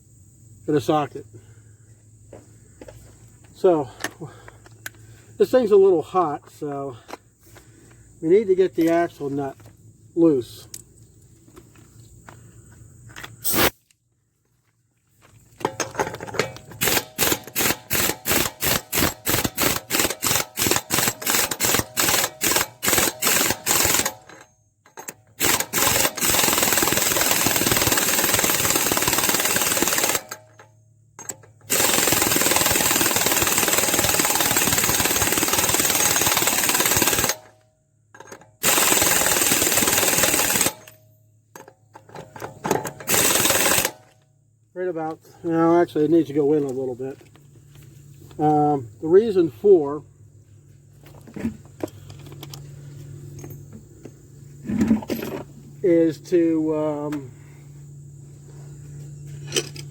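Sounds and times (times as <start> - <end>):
impact wrench hammering: 15.6 - 37.5.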